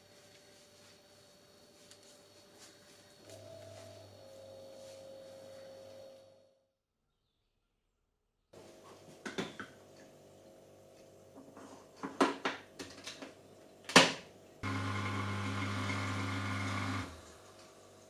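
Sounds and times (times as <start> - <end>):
kitchen knocks and clicks: 12.0 - 14.2
small kitchen appliance humming: 14.5 - 18.0.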